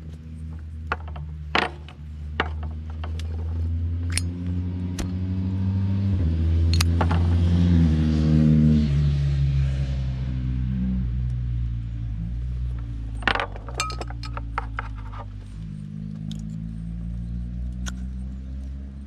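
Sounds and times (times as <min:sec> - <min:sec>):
car engine running: 0:06.7 - 0:07.6.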